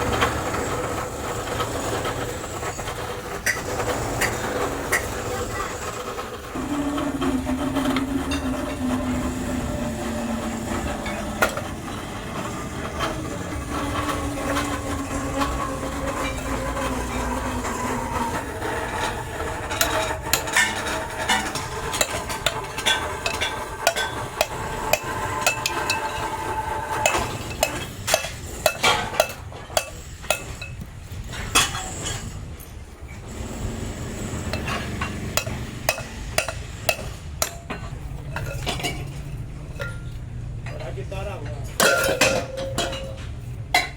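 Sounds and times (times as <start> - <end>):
machinery humming: 0.0 - 41.8
scrap metal clinking: 14.5 - 32.4, 34.0 - 43.9.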